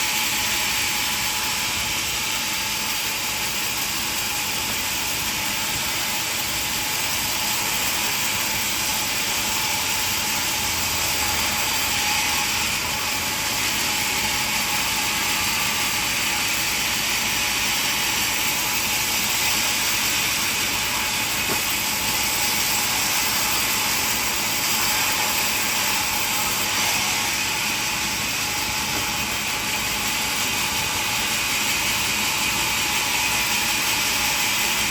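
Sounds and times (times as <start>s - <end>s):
sawmill machinery running: 0.0s - 34.9s.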